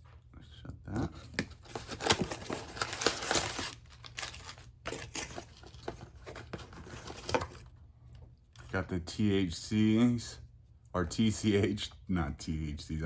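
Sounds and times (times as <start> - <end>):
wrapping crinkling and tearing: 1.4 - 7.6.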